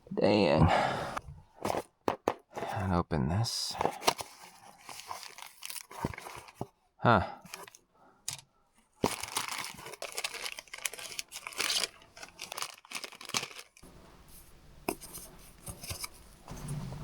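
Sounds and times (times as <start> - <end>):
plastic packaging crinkling: 3.9 - 6.6, 9.0 - 13.8.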